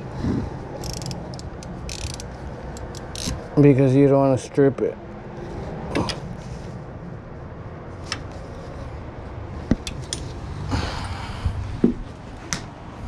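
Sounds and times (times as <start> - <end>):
hand tools clicking on metal: 0.8 - 3.4.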